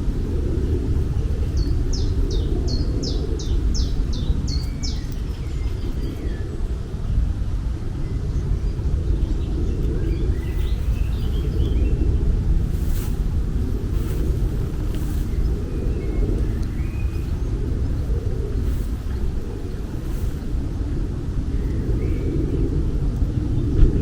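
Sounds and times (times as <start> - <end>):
low outdoor rumble: 0.0 - 24.0
faint bird chirps: 8.1 - 20.7.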